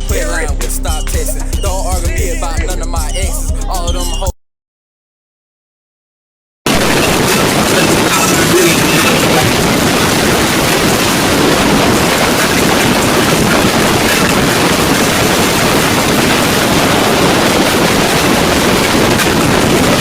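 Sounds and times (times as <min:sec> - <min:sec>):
water rushing: 0:06.7 - 0:20.0
wind on microphone: 0:06.7 - 0:20.0.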